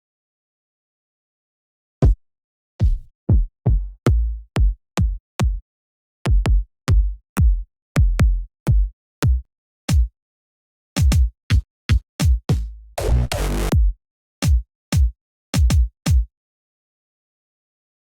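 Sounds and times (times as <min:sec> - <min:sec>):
electronic kick drum hits: 0:13.0 - 0:14.0.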